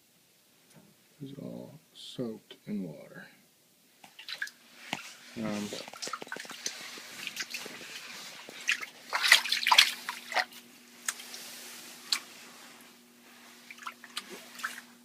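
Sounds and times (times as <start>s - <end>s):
low steady hum: 0.0s - 15.0s
water dripping and splashing: 4.0s - 5.1s, 5.7s - 11.5s, 13.6s - 15.0s
splashy clatter: 8.6s - 10.5s.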